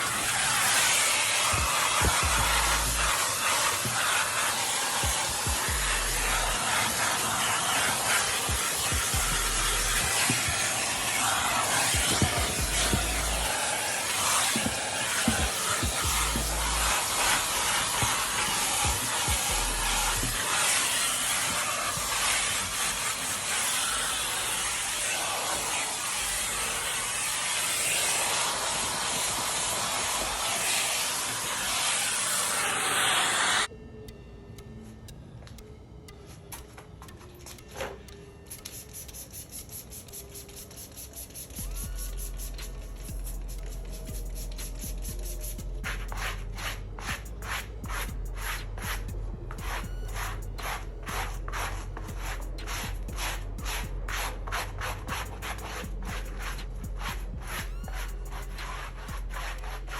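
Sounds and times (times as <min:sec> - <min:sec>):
wet dry vacuum running: 0:00.0 - 0:33.7
steady low hum: 0:01.6 - 0:03.4, 0:04.2 - 0:14.1, 0:14.8 - 0:20.5, 0:41.6 - 0:59.9.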